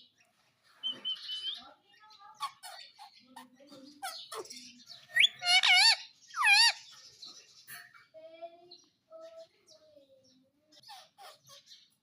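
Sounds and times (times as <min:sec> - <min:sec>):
parrot warbling call: 0:05.2 - 0:06.8.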